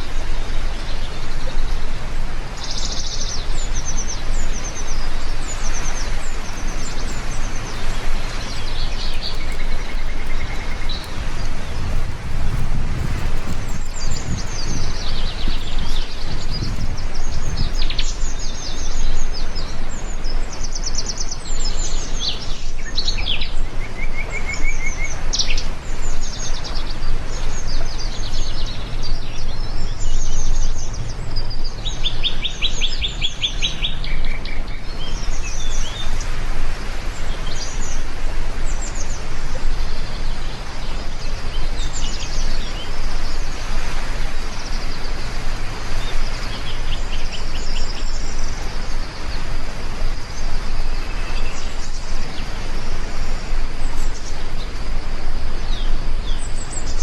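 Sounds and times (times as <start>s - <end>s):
rain hissing: 4.4s - 19.9s
birds chirping and singing: 5.8s - 19.2s.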